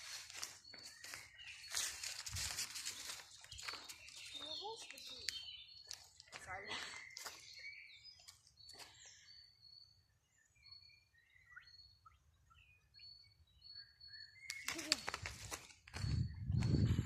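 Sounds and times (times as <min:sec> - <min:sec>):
sharp crackling and rustling: 0:00.0 - 0:06.6, 0:14.5 - 0:16.7
small birds singing: 0:00.0 - 0:17.0.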